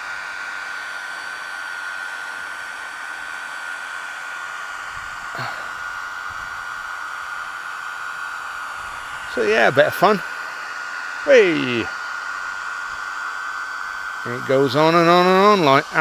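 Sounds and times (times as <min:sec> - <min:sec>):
cooling fans whirring with whine: 0:14.0 - 0:16.0.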